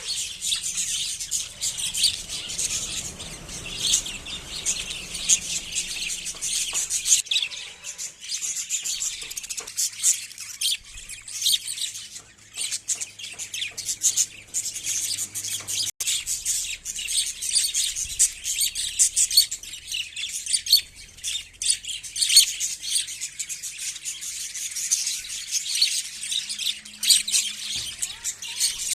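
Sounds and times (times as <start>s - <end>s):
small birds chirping: 0.0s - 28.9s.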